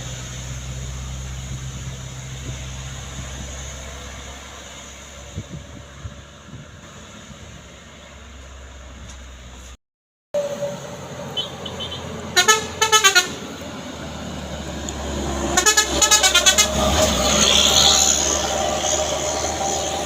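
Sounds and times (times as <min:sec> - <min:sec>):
heavy vehicle running: 0:00.0 - 0:09.8, 0:10.4 - 0:20.0
vehicle horn fluttering toots: 0:10.4 - 0:13.4, 0:15.5 - 0:16.8.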